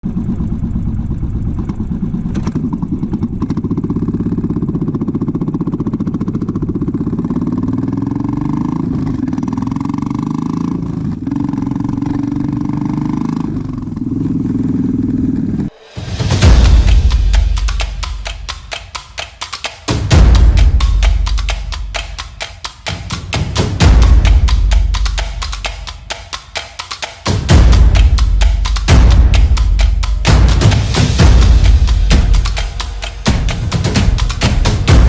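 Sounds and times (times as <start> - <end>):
motorcycle engine running: 0.0 - 19.0, 27.2 - 35.0
music with drums: 15.7 - 35.0.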